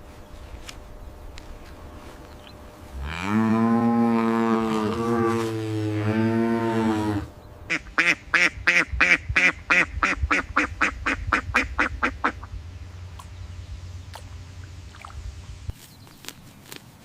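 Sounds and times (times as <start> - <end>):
cow mooing: 3.0 - 7.3
duck quacking rapidly: 7.7 - 12.5.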